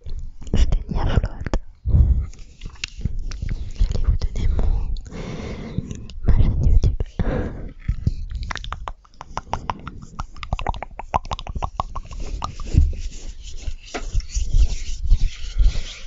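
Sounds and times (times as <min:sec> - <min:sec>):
wet chewing mouth sounds: 0:02.2 - 0:06.2, 0:07.8 - 0:13.1.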